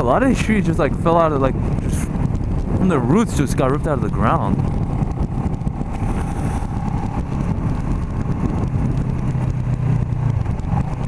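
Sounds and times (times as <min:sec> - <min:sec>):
motorcycle engine running: 0:00.0 - 0:11.0
wind rumbling on microphone: 0:00.0 - 0:11.0.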